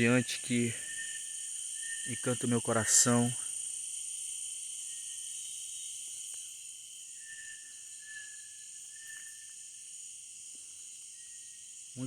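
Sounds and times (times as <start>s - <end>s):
insects buzzing and trilling: 0.0s - 12.0s
faint whistle-like notes: 7.2s - 9.6s.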